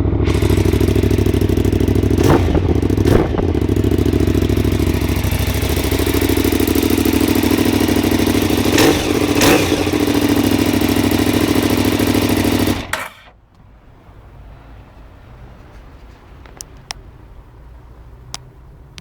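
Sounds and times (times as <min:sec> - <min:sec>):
motorcycle engine idling: 0:00.0 - 0:14.2.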